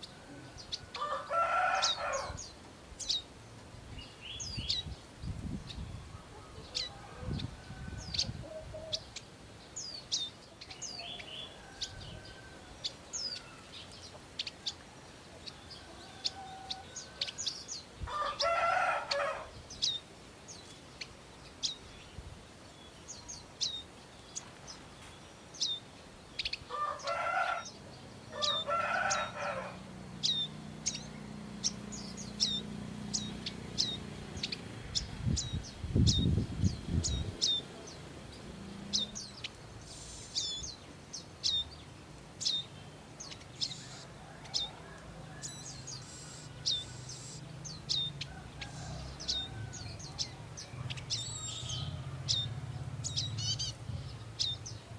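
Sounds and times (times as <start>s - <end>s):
bird low harsh calls: 0.0s - 3.3s, 15.5s - 20.1s, 26.4s - 40.8s, 42.4s - 54.9s.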